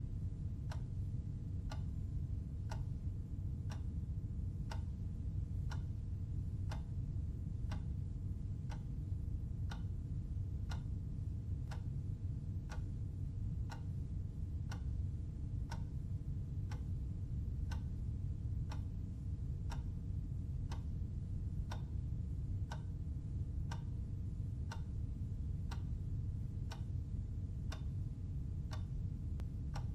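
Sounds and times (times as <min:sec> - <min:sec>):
low background hum: 0:00.0 - 0:29.9
clock ticking: 0:01.7 - 0:01.9, 0:02.7 - 0:03.0, 0:04.7 - 0:04.9, 0:05.6 - 0:06.0, 0:06.7 - 0:06.9, 0:07.7 - 0:07.9, 0:09.7 - 0:09.9, 0:10.6 - 0:10.8, 0:11.7 - 0:11.9, 0:13.7 - 0:14.0, 0:14.6 - 0:14.9, 0:15.7 - 0:16.0, 0:16.7 - 0:18.0, 0:18.6 - 0:19.9, 0:20.7 - 0:20.9, 0:21.6 - 0:22.0, 0:22.7 - 0:22.9, 0:23.7 - 0:23.9, 0:24.7 - 0:25.0, 0:25.7 - 0:26.0, 0:26.7 - 0:26.9, 0:27.7 - 0:27.9, 0:28.7 - 0:29.9.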